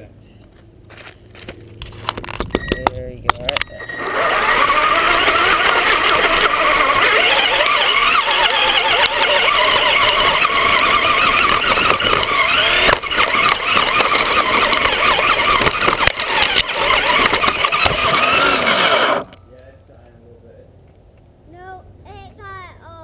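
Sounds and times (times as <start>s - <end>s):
electric motor whining: 2.1s - 19.4s
tyre and wind noise: 4.2s - 19.3s
sharp knocks of landings: 4.4s - 19.3s.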